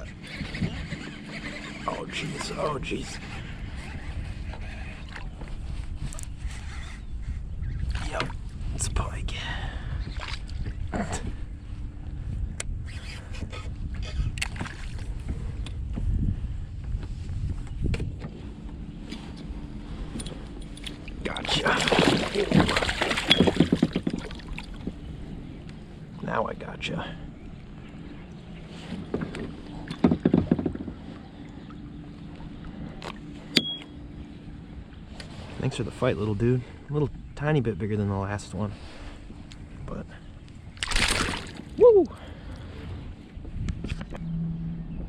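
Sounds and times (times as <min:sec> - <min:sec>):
wind buffeting microphone: 0:00.0 - 0:33.5, 0:34.1 - 0:45.0
steady low hum: 0:00.0 - 0:45.0
light water splashing: 0:20.8 - 0:24.8, 0:40.8 - 0:41.8
knocks and thumps on kayak: 0:21.6 - 0:25.0, 0:28.9 - 0:31.1.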